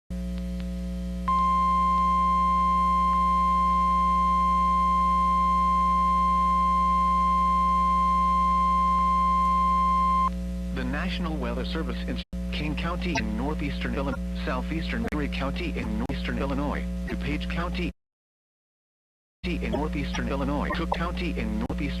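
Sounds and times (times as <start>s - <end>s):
radio feed low hum: 0.1s - 17.9s, 19.4s - 22.0s
steady alarm beep: 1.3s - 10.3s.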